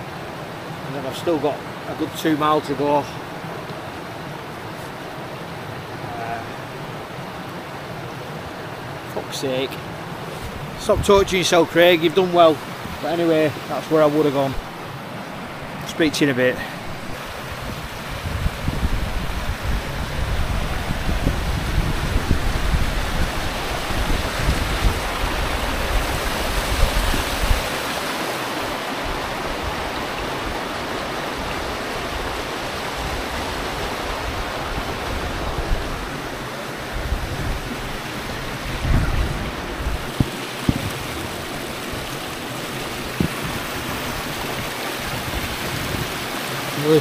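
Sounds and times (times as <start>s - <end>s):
stream water rushing: 0.0s - 47.0s
wind buffeting microphone: 10.4s - 11.4s, 16.9s - 28.1s, 31.4s - 46.3s
low knocks: 40.1s - 41.0s.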